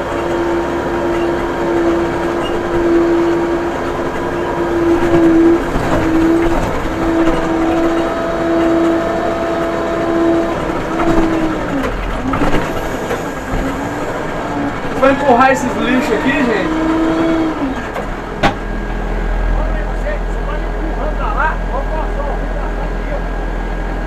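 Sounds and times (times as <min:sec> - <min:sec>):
diesel engine under load: 0:00.0 - 0:24.0.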